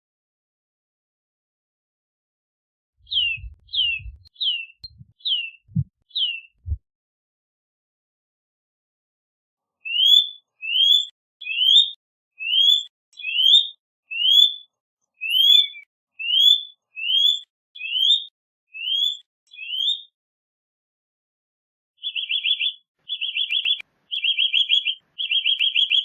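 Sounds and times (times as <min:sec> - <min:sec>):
bird whistling rising notes: 0:03.1 - 0:06.8, 0:22.1 - 0:26.0.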